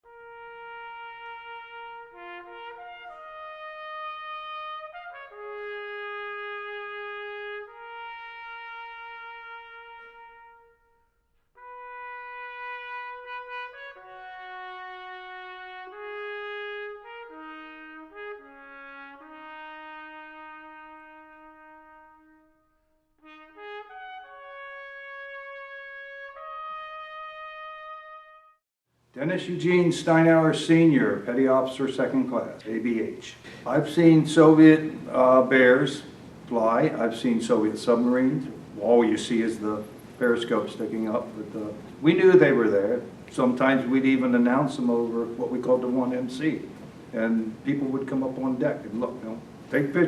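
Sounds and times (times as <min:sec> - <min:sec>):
solo trumpet slow melody: 0:00.0 - 0:28.6.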